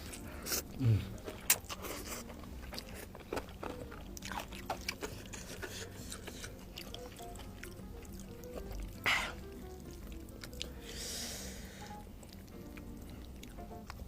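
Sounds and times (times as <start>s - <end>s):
crunchy chewing: 0.0s - 10.9s
faint background music: 0.0s - 14.0s.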